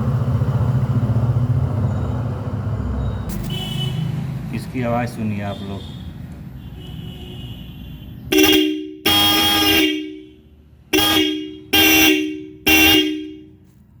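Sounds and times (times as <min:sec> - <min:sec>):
two-tone vehicle horn blasts: 0:06.6 - 0:13.6.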